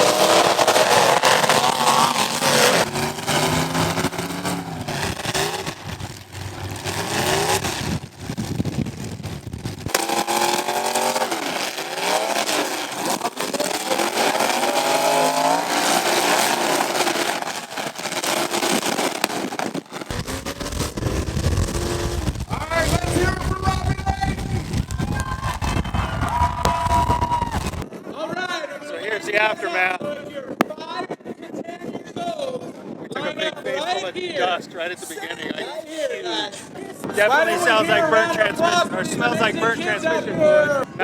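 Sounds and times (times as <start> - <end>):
car engines revving hard: 0.0 - 27.8.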